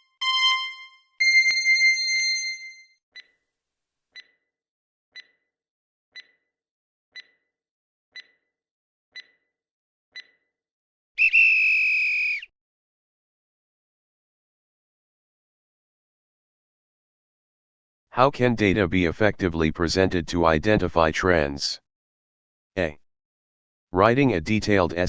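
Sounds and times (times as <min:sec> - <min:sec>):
high alarm beep: 0:00.2 - 0:02.8
timer ticks: 0:04.2 - 0:04.4, 0:05.2 - 0:05.4, 0:06.2 - 0:06.4, 0:07.2 - 0:07.4, 0:08.2 - 0:08.4, 0:09.2 - 0:09.4, 0:10.2 - 0:10.4.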